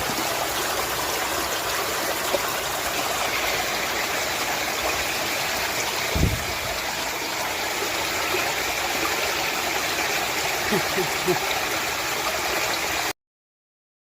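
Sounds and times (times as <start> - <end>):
waterfall rushing: 0.0 - 13.1
short low thump: 6.1 - 6.8.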